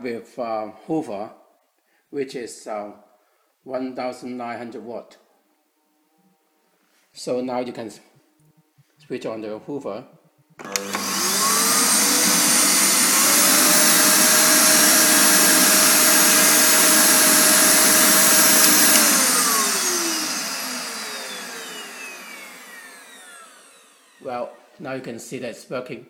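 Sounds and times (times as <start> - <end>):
vacuum cleaner switch click: 10.6 - 23.0
vacuum cleaner motor whining: 10.6 - 24.7.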